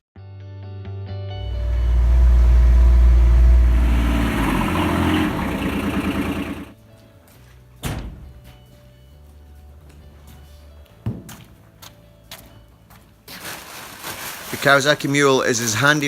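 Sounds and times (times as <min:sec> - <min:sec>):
diesel engine accelerating: 0:01.3 - 0:06.8
thump: 0:07.8 - 0:08.4.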